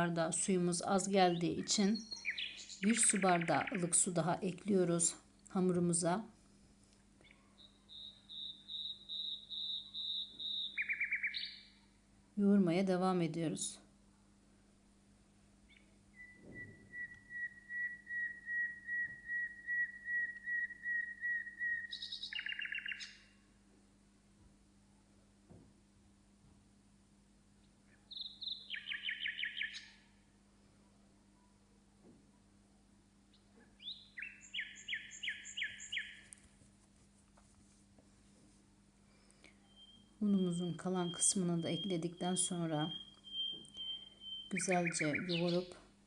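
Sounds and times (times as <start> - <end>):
songbird trilling: 1.3 - 4.0, 7.6 - 11.7, 15.7 - 23.2, 28.1 - 30.1, 33.8 - 36.2, 39.6 - 45.7
bird singing descending whistles: 2.0 - 3.8, 7.6 - 11.8, 15.7 - 23.3, 28.1 - 30.2, 33.8 - 36.2, 39.6 - 45.7.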